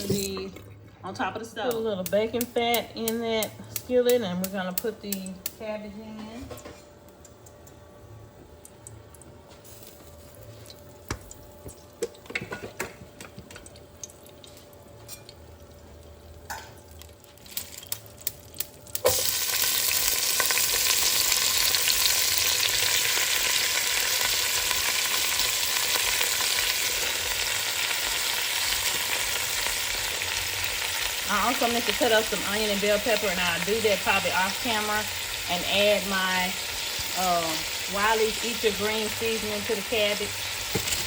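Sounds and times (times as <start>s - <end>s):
cabbage sizzling in hot fat: 14.5s - 41.0s.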